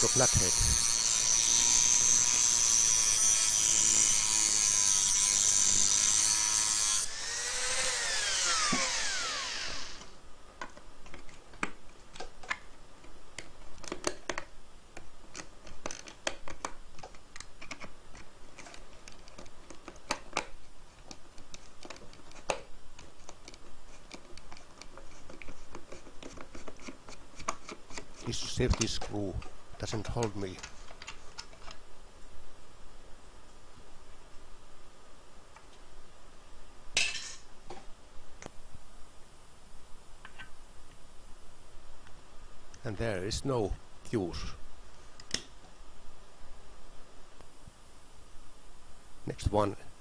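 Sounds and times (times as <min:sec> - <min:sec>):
rotary tool cutting disc whining: 0:00.0 - 0:10.2
small clicks and scrapes on screw: 0:07.8 - 0:31.8.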